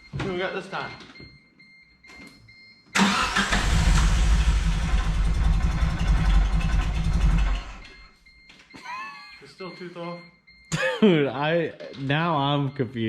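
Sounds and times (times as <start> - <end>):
engine cranking: 3.0 - 8.0.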